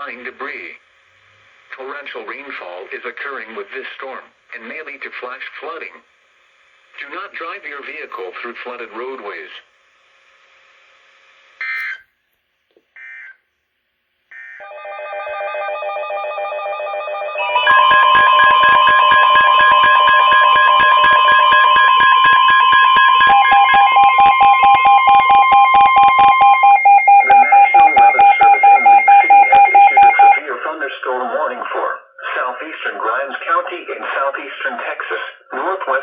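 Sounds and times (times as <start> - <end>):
rapidly pulsing alarm: 14.3 - 30.4
long steady warning tone: 14.4 - 30.4
electronic alert tones: 16.4 - 30.4
short data bursts: 17.4 - 30.4.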